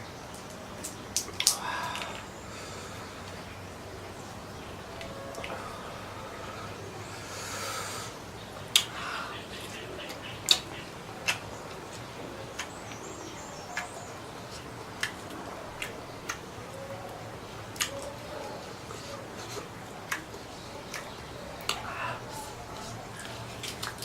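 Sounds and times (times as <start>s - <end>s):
mouth clicks and crunches: 0.3s - 2.3s, 8.7s - 9.0s, 9.6s - 13.0s, 13.7s - 16.5s, 17.1s - 24.0s.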